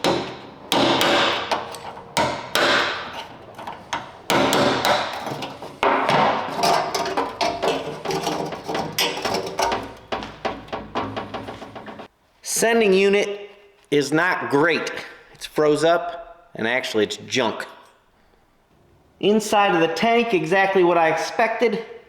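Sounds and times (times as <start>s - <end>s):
hammer on metal: 0.0s - 12.1s.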